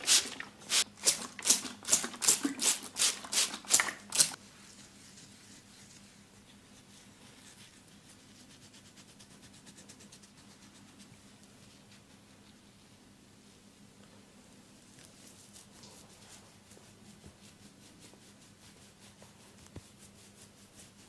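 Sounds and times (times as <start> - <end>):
hands rubbing in massage: 15.0 - 21.0.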